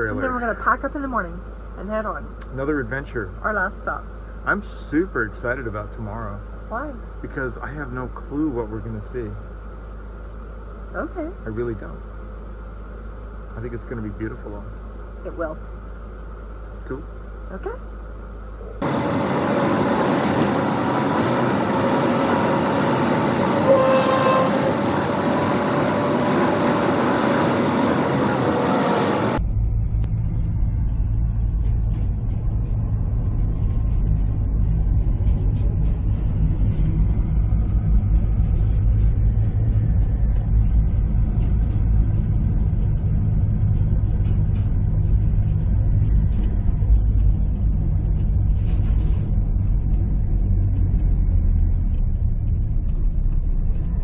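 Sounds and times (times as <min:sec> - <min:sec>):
road rumble inside vehicle cabin: 0:00.0 - 0:54.0
road traffic noise: 0:14.7 - 0:29.4
car horn toot: 0:23.6 - 0:24.8.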